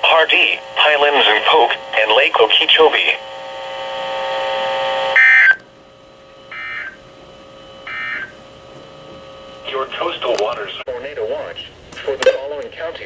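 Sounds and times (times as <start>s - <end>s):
digital data tone bursts: 0.0s - 5.6s, 6.5s - 7.0s, 7.8s - 8.4s
steady buzzing tone: 0.0s - 13.0s.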